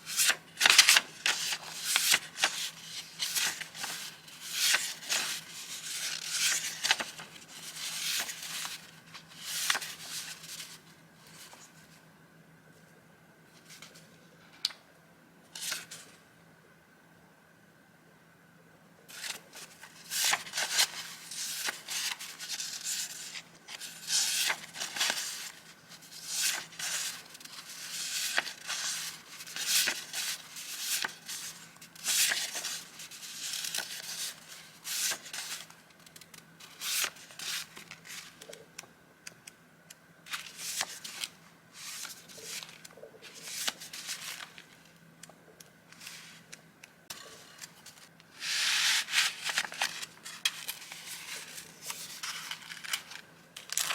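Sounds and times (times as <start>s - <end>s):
paper rustling and crinkling: 0.0s - 11.9s, 19.1s - 38.6s, 40.3s - 44.9s, 47.1s - 53.9s.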